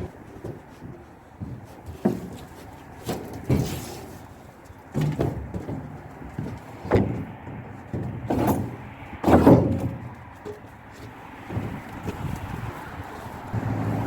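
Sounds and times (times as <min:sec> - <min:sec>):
heavy thumps: 0:00.0 - 0:14.0.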